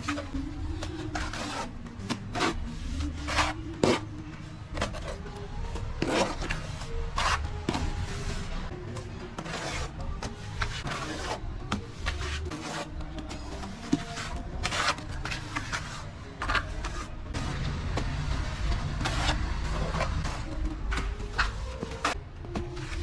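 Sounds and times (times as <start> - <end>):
trowel scraping wet mortar: 0.0 - 4.2, 6.0 - 8.6, 9.4 - 17.5.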